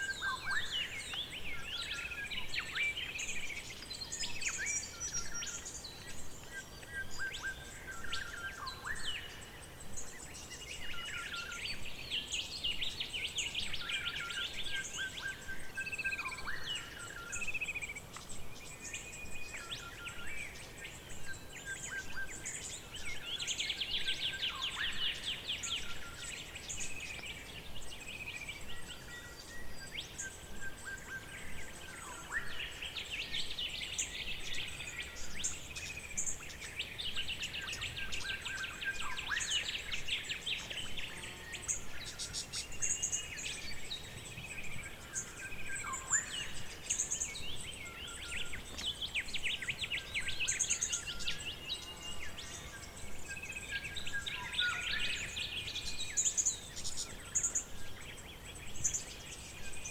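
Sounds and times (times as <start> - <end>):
birds singing and calling: 0.0 - 59.9
faint background hiss: 0.0 - 59.9.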